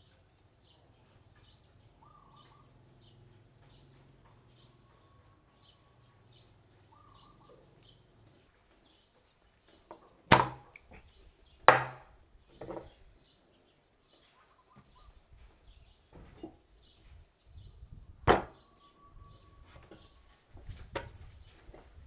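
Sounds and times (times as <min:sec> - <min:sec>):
birds chirping: 0:00.0 - 0:22.0
sharp wooden knocks: 0:09.9 - 0:11.0, 0:11.7 - 0:12.9, 0:18.2 - 0:18.6, 0:19.7 - 0:21.3.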